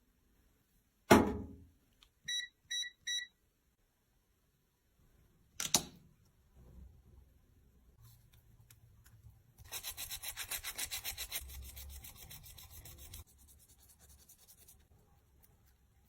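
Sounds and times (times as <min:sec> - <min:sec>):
short electronic beeps: 0:02.3 - 0:03.3.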